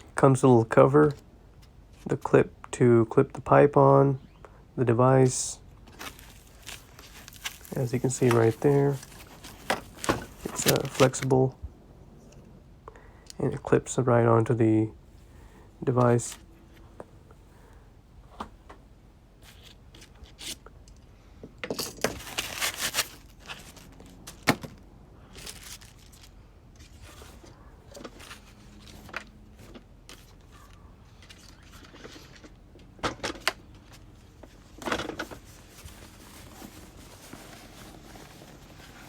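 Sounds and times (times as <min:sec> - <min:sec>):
plastic rattling and rustling: 0:05.8 - 0:11.4, 0:21.7 - 0:39.0.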